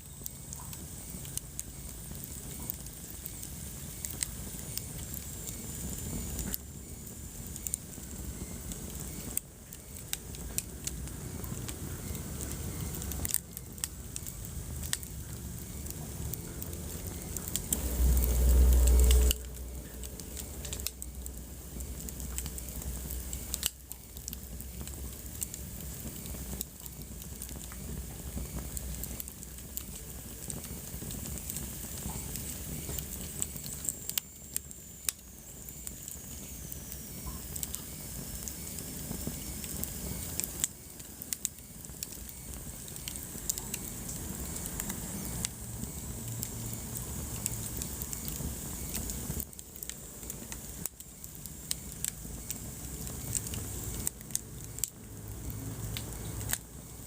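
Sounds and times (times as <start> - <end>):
wood fire crackling and popping: 0.0 - 57.0
low rumble: 14.7 - 23.6.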